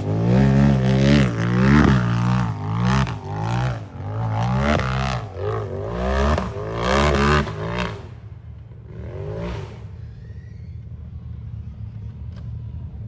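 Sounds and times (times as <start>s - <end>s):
engine revving hard: 0.0s - 8.2s
low engine rumble: 0.0s - 8.9s, 9.8s - 13.0s.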